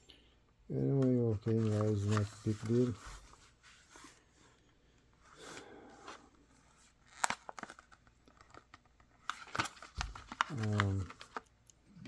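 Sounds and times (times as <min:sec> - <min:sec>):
plastic packaging rustling: 0:01.1 - 0:04.4, 0:05.4 - 0:11.6
plastic packaging crackling: 0:07.0 - 0:11.6.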